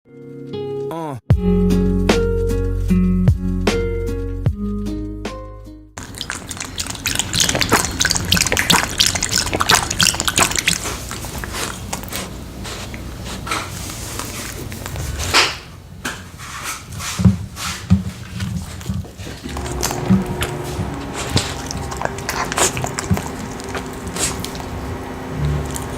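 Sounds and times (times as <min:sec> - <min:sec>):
dog eating with wet smacking: 0:06.0 - 0:15.4, 0:18.0 - 0:25.9.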